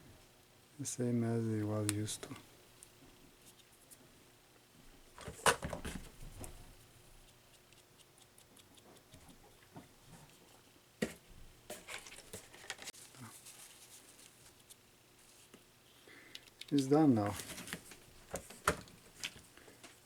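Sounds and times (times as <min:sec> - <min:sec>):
small plastic parts clicking: 0:16.3 - 0:16.9.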